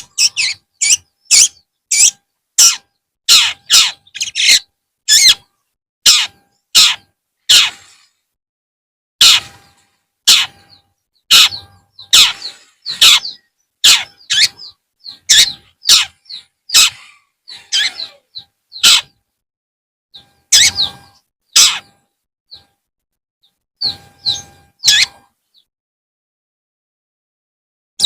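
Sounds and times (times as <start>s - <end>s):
shrike giving harsh calls: 9.2s - 9.6s, 11.3s - 14.7s.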